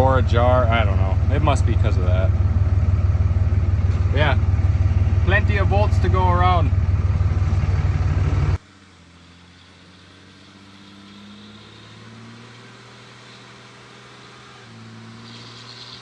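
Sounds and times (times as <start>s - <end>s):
diesel engine idling: 0.0s - 8.6s.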